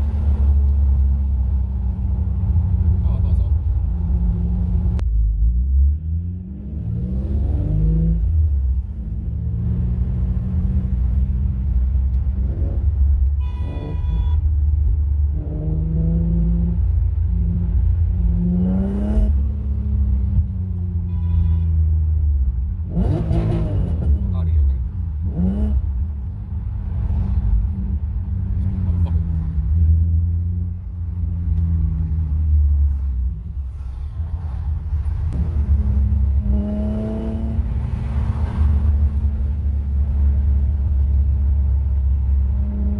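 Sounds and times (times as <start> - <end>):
short horn-like toot: 13.4 - 14.4, 21.1 - 21.8.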